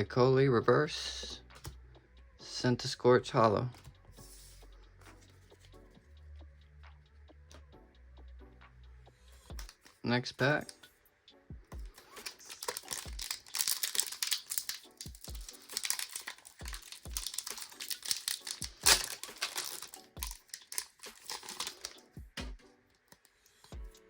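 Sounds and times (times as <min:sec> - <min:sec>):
foil wrapper crinkling and tearing: 0:12.0 - 0:22.1.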